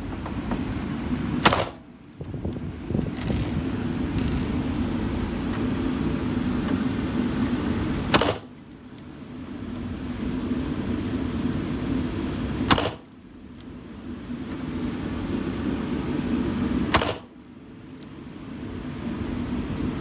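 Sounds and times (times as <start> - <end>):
steady low rumble: 0.0 - 20.0
handgun shots: 1.4 - 1.8, 8.1 - 8.5, 12.7 - 13.1, 16.9 - 17.3.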